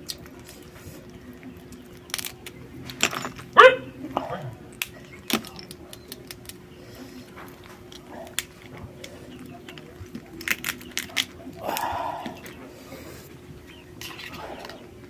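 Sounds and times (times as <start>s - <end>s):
shell cracking while eating: 0.0s - 12.7s
steady low hum: 0.0s - 15.0s.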